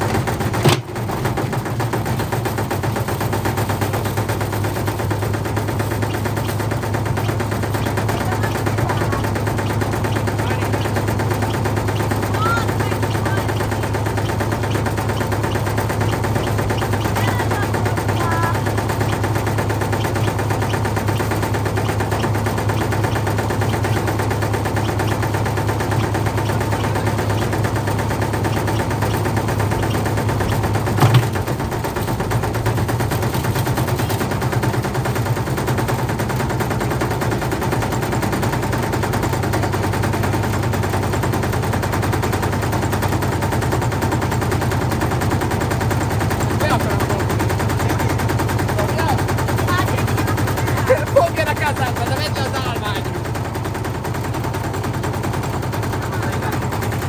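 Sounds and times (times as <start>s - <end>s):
washing machine banging and rattling: 0.0s - 57.0s.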